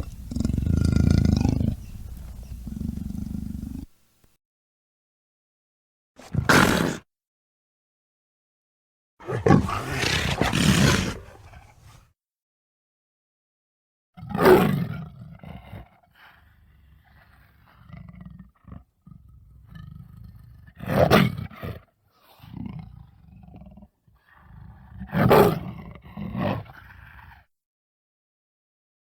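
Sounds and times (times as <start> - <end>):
big cat roars: 0.0 - 3.9, 9.2 - 12.0
low rumbling growls: 0.0 - 4.0, 9.3 - 12.0.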